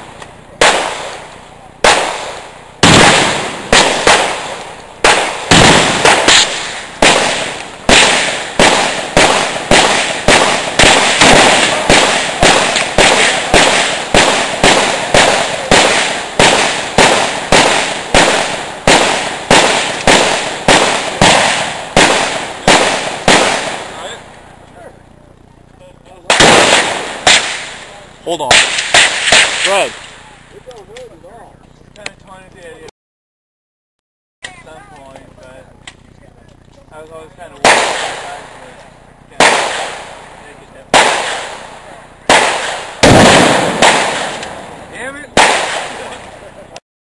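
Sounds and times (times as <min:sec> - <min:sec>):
rapid gunshots: 0:00.6 - 0:24.3, 0:26.2 - 0:30.4, 0:37.5 - 0:46.6.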